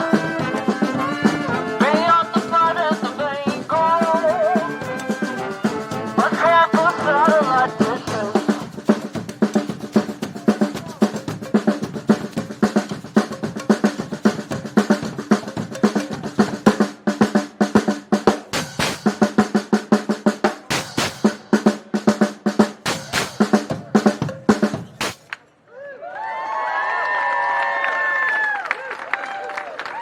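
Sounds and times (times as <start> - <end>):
brass horns: 0.0 - 8.6
snare and bass drum groove: 0.0 - 25.4.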